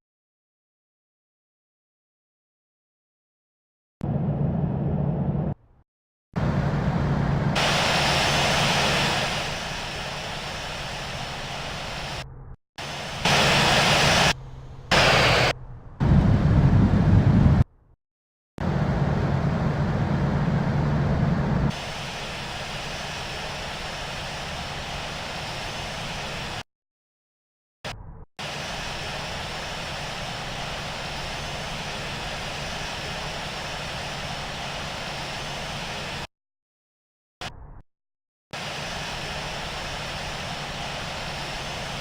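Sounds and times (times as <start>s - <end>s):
jet engine noise: 4.0s - 5.6s, 6.4s - 17.7s, 18.6s - 26.7s, 28.4s - 36.3s, 38.6s - 42.0s
low hum: 4.0s - 5.8s, 6.4s - 17.9s, 18.6s - 21.7s.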